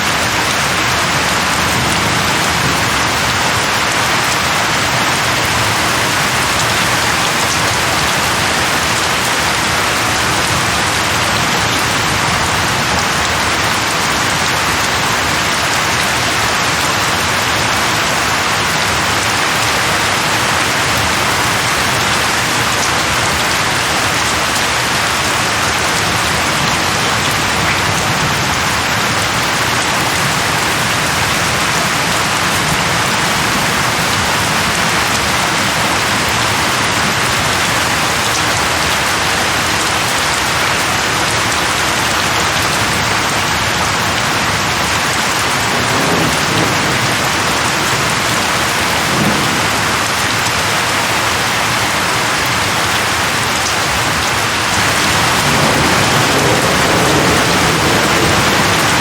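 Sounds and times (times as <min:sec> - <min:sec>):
steady rain falling: 0:00.0 - 0:59.0.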